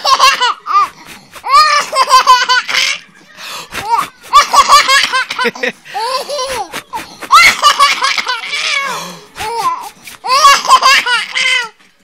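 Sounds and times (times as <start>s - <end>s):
baby giggling: 0.0s - 11.8s.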